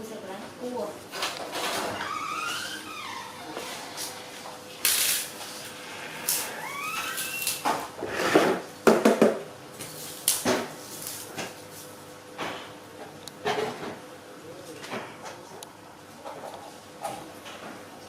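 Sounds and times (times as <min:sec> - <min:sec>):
high squeak: 0:02.0 - 0:03.5, 0:06.3 - 0:07.6.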